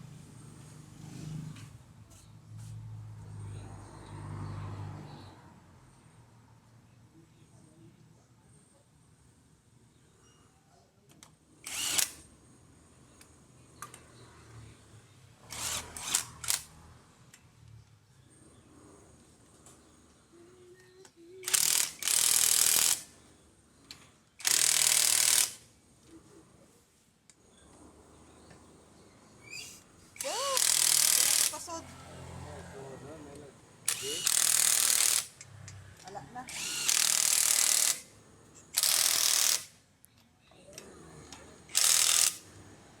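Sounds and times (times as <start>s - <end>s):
impact wrench bursts: 11.6s - 12.2s, 15.4s - 16.8s, 21.4s - 23.1s, 24.4s - 25.6s, 29.5s - 31.8s, 33.8s - 35.6s, 36.5s - 39.8s, 41.6s - 42.5s.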